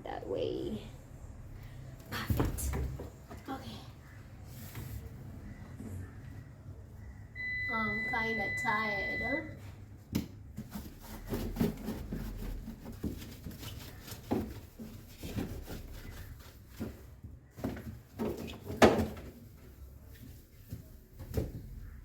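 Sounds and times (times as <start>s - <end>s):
knocks and clunks of fridge parts: 16.7s - 19.4s.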